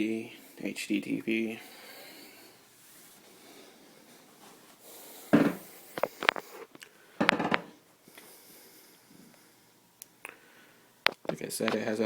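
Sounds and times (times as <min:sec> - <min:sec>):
handling knocks: 0:05.3 - 0:05.7, 0:07.2 - 0:07.8.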